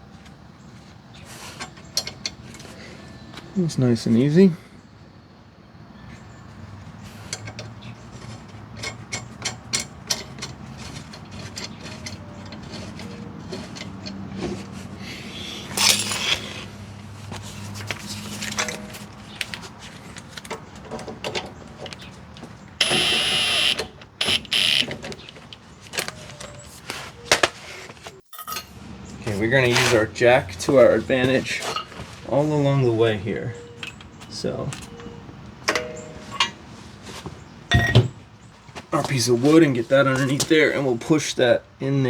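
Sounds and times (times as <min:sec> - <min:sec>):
metal tools clicking and clinking: 0:15.7 - 0:16.6, 0:28.3 - 0:28.8, 0:37.7 - 0:38.2.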